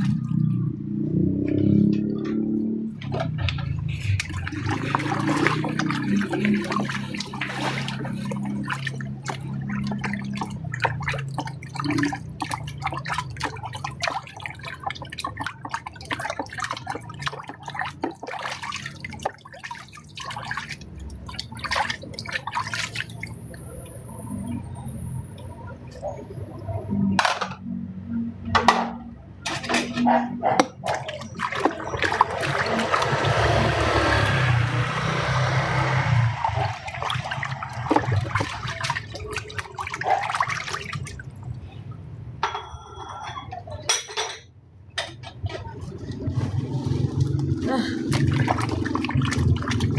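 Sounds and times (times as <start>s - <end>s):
water running and splashing: 0.0s - 1.1s, 3.0s - 25.2s, 30.7s - 41.6s, 45.9s - 49.9s.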